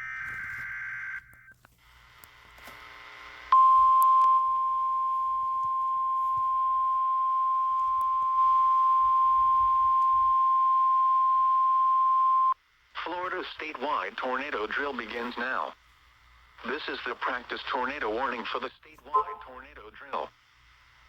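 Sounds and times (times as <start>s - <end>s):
radio hiss: 12.9s - 21.0s
warbling data header tones: 19.1s - 19.6s.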